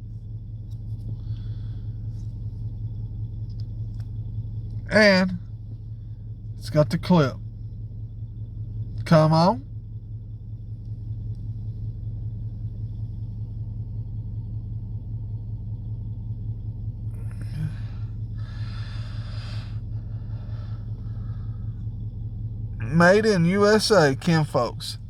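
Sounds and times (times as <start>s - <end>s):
steady low rumble: 0.0s - 25.0s.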